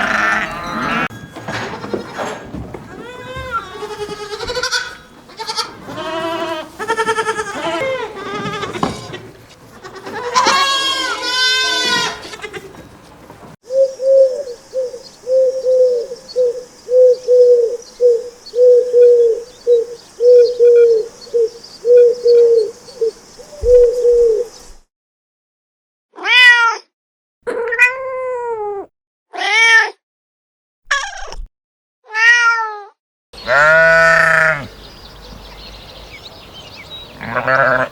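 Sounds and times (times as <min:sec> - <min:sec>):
cat meowing: 0:26.2 - 0:26.8, 0:27.5 - 0:29.9, 0:32.1 - 0:32.9.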